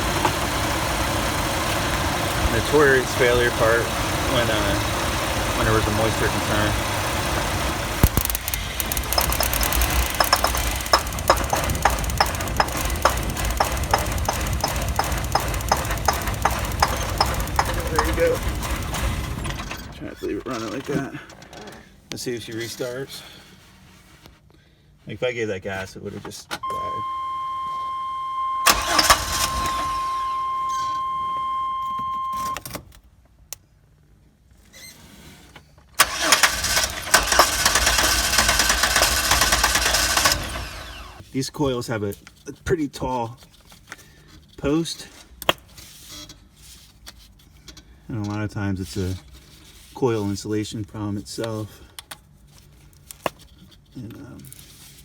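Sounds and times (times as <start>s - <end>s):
engine idling: 0.0s - 20.1s, 28.6s - 31.2s, 36.0s - 41.2s
sharp short clicks: 8.0s - 18.5s.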